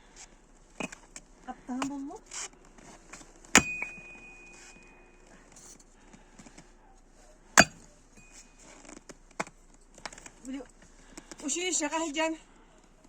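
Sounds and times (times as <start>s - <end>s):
sharp clink impact with ringing: 3.6s - 5.0s, 7.6s - 8.5s.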